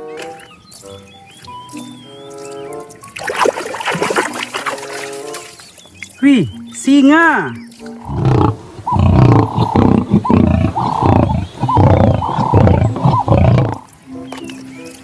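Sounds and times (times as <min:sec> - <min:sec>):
lion roaring: 0:08.0 - 0:13.9.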